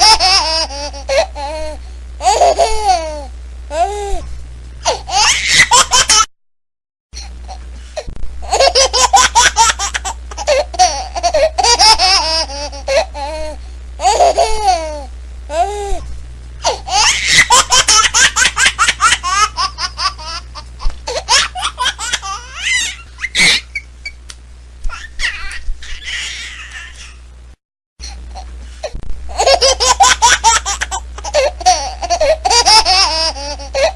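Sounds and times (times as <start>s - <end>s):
baby laughing and squealing: 0.0s - 3.2s, 4.9s - 6.3s, 8.4s - 15.6s, 16.6s - 24.2s, 24.9s - 27.2s, 29.3s - 33.9s.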